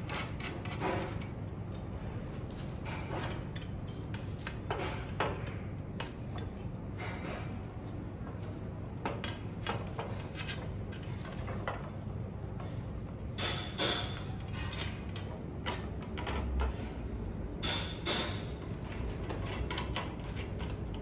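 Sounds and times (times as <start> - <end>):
steady low hum: 0.0 - 21.0.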